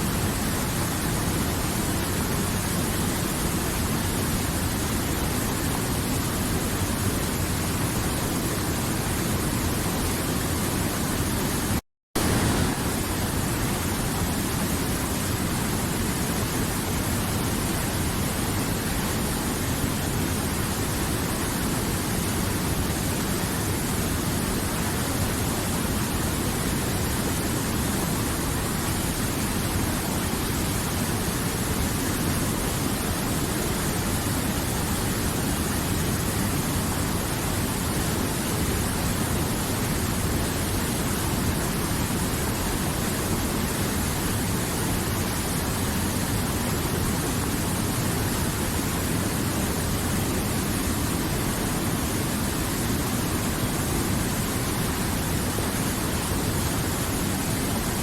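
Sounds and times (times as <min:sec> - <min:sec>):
river water flowing: 0:12.2 - 0:58.0.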